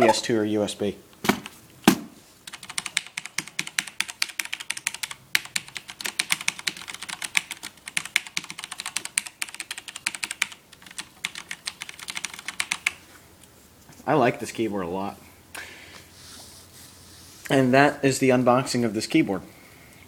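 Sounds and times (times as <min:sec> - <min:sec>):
fast typing on mechanical keyboard: 0:02.4 - 0:13.0.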